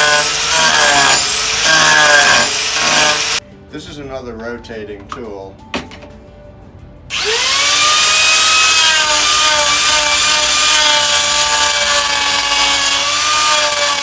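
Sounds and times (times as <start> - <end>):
rotary tool whining: 0.0 - 3.4, 7.1 - 14.0.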